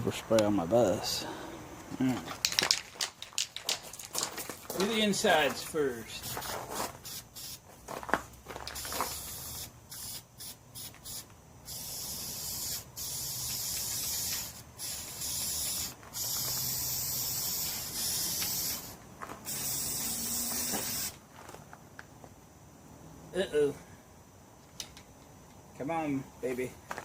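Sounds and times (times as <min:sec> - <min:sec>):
aerosol spray can hissing: 0:05.9 - 0:07.6, 0:08.8 - 0:21.2.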